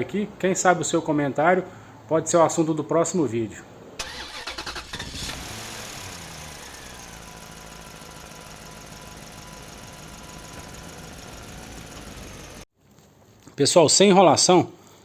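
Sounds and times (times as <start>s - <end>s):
car engine idling: 4.0s - 12.7s.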